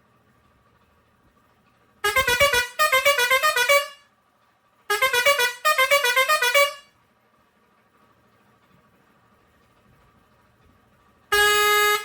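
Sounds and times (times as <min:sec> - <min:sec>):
air horn playing a tune: 0:02.0 - 0:04.0, 0:04.9 - 0:06.9, 0:11.3 - 0:12.0.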